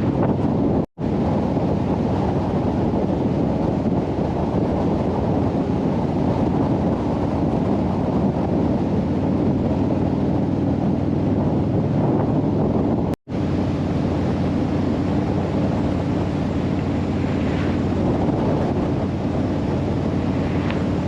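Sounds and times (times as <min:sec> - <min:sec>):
motorcycle engine running: 0:00.0 - 0:21.0
wind rushing over microphone: 0:00.0 - 0:21.0.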